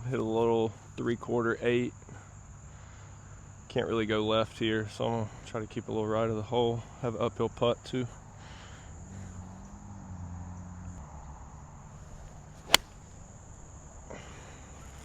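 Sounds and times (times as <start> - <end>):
golf club striking ball: 12.6 - 13.1.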